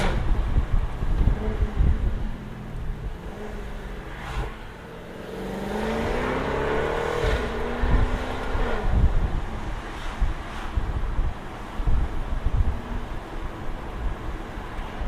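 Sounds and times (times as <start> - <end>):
car engine rising in pitch: 1.2 - 9.2.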